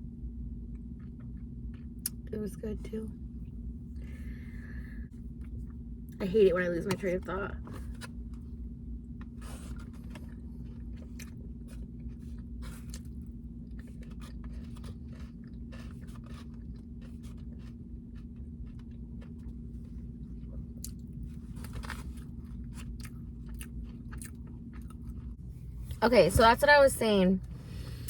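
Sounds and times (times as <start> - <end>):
steady low hum: 0.0 - 28.0
chewing with wet mouth clicks: 0.7 - 2.2, 9.8 - 25.4.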